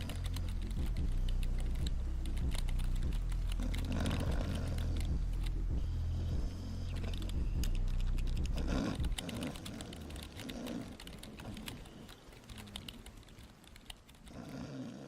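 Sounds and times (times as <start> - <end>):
keyboard typing: 0.0 - 5.8, 6.8 - 14.4
loud snores: 8.6 - 10.9, 14.3 - 15.0.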